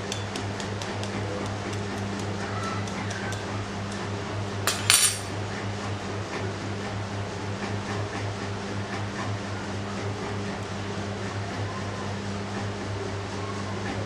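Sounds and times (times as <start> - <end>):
kitchenware clinking and clattering: 4.7 - 5.3.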